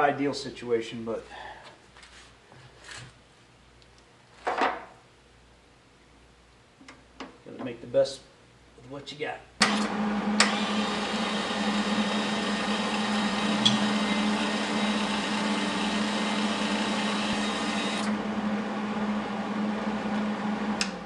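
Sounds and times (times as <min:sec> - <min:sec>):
welder wire-feed motor hum: 0:09.6 - 0:18.2.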